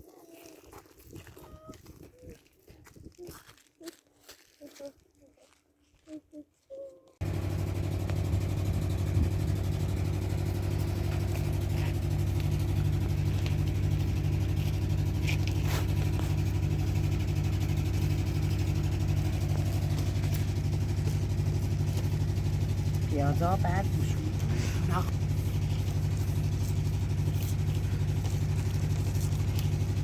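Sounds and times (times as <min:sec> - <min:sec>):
motor running with pulsing hum: 0:07.2 - 0:30.0.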